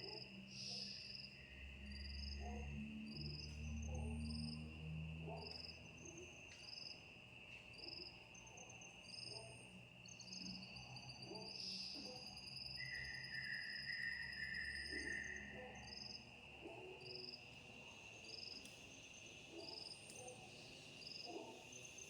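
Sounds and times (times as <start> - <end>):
insects trilling: 10.2 - 22.0.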